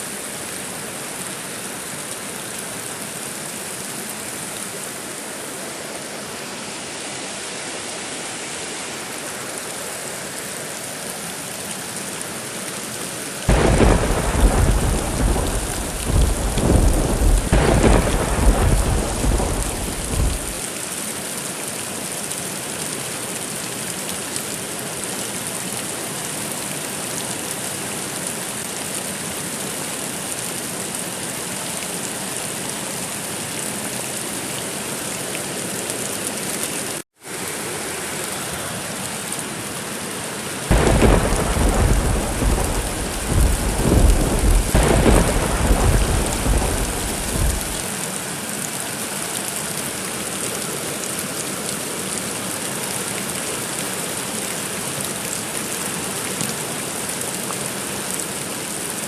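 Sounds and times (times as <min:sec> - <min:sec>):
steady rain falling: 0:00.0 - 0:59.0
rolling thunder: 0:13.5 - 0:20.6, 0:40.7 - 0:47.8.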